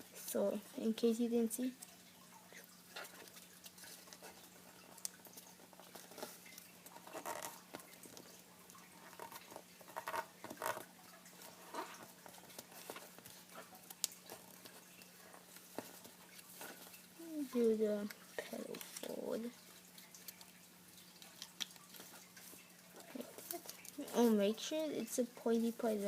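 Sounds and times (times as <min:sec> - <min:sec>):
faint steady hum: 0:00.0 - 0:26.0
paper being folded and creased: 0:02.6 - 0:08.3, 0:09.0 - 0:10.9, 0:21.2 - 0:24.6.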